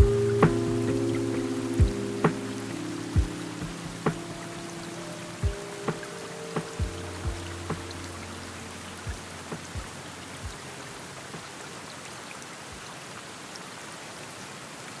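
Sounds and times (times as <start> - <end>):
low thumps: 0.0 - 4.5
music with held low notes: 0.0 - 11.2
steady rain hiss: 0.0 - 15.0.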